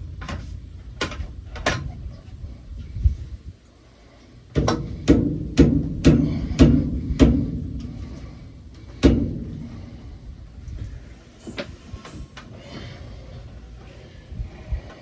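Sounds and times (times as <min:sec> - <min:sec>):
hammer blows on steel: 0:04.6 - 0:10.2.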